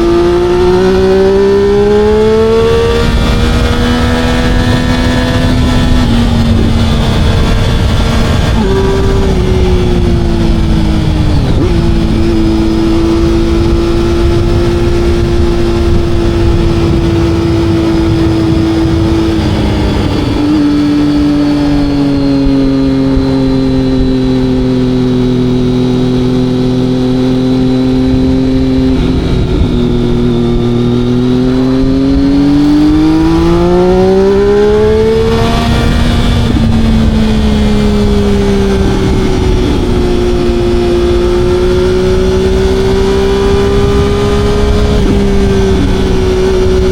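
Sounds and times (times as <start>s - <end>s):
motorcycle engine running: 0.0s - 46.9s.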